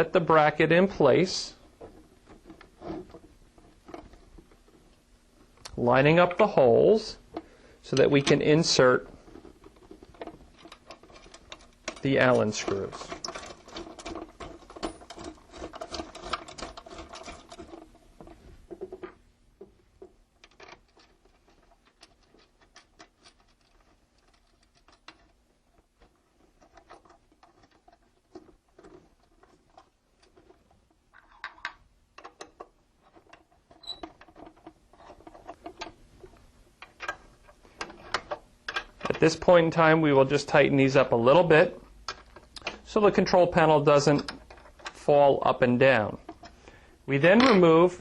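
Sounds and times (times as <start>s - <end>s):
clicks and scrapes of metal parts: 9.1s - 19.2s, 20.4s - 39.2s.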